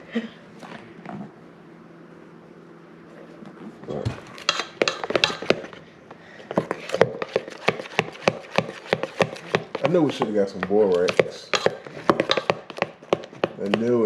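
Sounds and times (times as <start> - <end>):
spoon scraping a mixing bowl: 4.4 - 5.8, 6.5 - 14.0.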